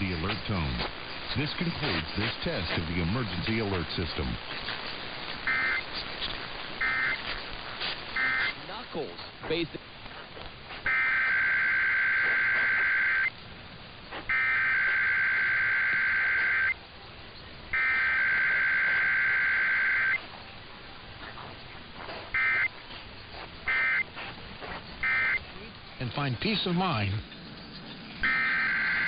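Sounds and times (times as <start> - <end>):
buzzy digital warbles: 5.4 - 5.9, 6.8 - 7.2, 8.2 - 8.6, 27.0 - 29.0
short digital blips: 5.4 - 5.9, 6.8 - 7.2, 28.2 - 29.0.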